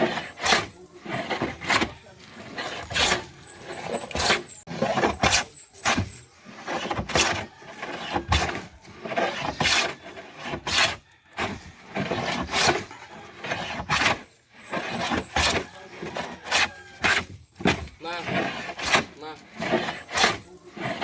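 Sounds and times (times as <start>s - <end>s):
hand plane shaving wood: 0.0s - 21.0s.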